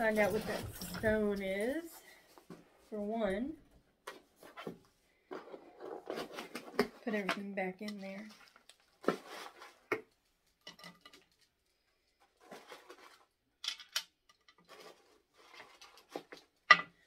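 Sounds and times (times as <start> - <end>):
rustling: 0.0 - 2.9, 8.0 - 10.0, 11.0 - 13.4, 14.7 - 16.6
small items clicking and knocking: 5.3 - 17.0.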